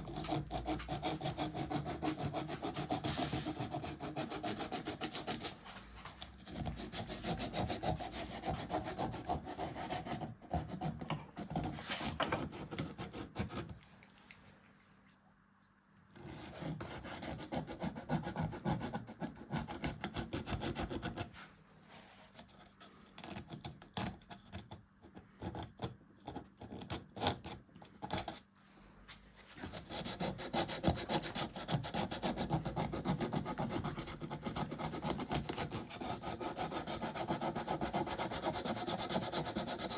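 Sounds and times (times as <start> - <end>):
hand tool scraping wood: 0.0 - 13.7.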